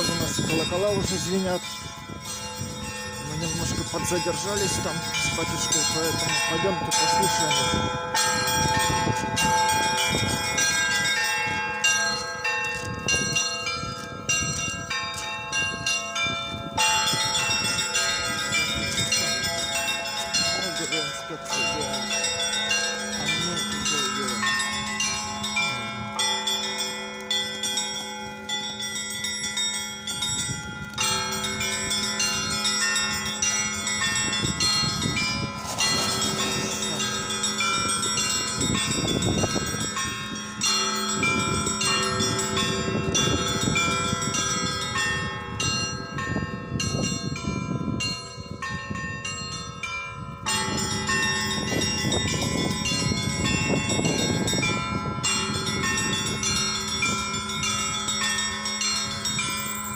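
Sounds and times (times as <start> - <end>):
church bells ringing: 0.0 - 59.9
low bell humming: 0.0 - 59.9.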